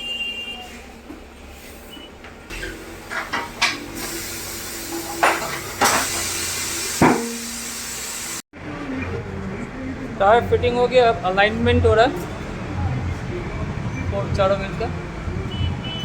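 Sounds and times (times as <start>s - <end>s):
compressed air hissing: 2.5s - 8.4s
metal clanks: 7.0s - 7.6s.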